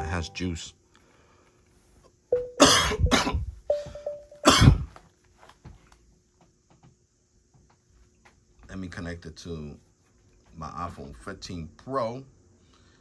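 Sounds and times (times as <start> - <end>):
short steady tone: 2.3 - 4.4
man coughing: 2.6 - 3.4, 4.4 - 4.9.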